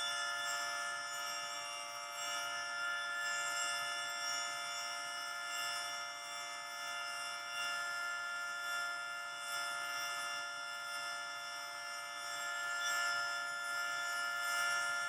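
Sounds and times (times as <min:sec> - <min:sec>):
rotating three-tone siren: 0:09.4 - 0:15.0.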